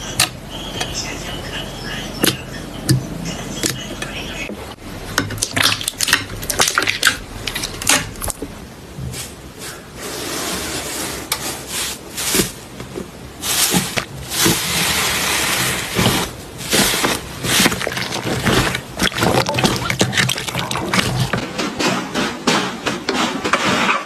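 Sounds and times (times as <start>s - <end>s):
slime squelching and crackling: 5.0s - 8.6s, 11.8s - 22.3s.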